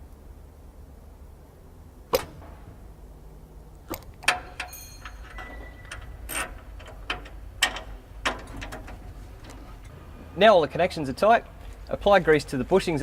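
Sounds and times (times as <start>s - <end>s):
tools clicking on metal: 3.9s - 9.9s
short ringing tone: 4.7s - 6.0s.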